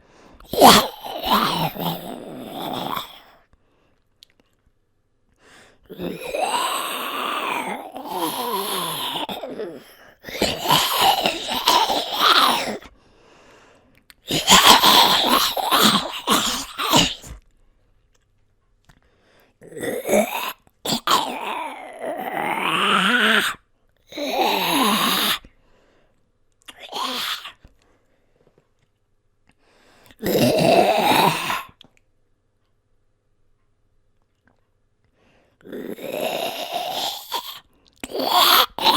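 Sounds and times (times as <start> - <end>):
person growling in zombie voice: 0.4 - 3.3, 5.9 - 12.9, 14.3 - 17.4, 19.6 - 25.4, 26.7 - 27.6, 30.2 - 31.7, 35.6 - 38.9.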